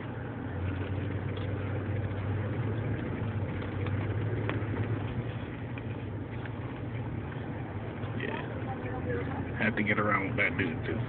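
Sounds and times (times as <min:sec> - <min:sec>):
car engine humming: 0:00.0 - 0:11.0
road noise: 0:00.0 - 0:11.0.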